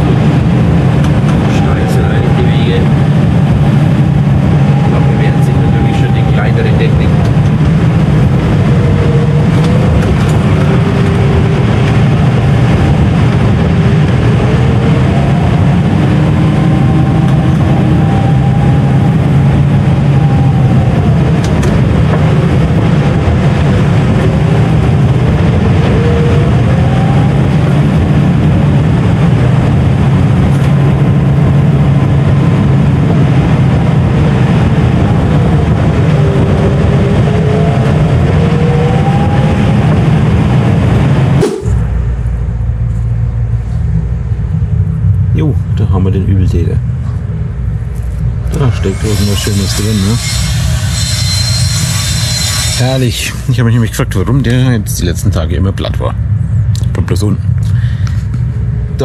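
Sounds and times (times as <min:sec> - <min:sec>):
faint wavering whine: 0:01.4 - 0:22.8, 0:47.0 - 0:54.0.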